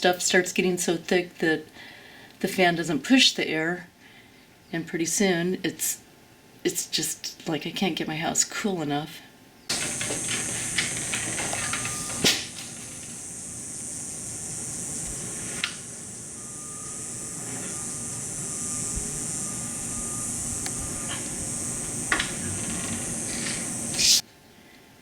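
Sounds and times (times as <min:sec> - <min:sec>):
air conditioner fan blowing: 0:09.7 - 0:24.5.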